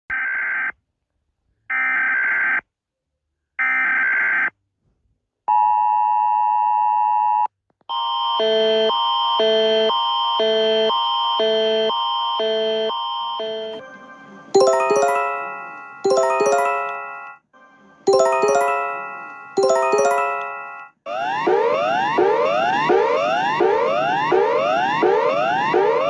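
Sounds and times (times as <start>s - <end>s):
alternating high and low alarm tones: 14.0s - 17.3s, 18.1s - 26.0s.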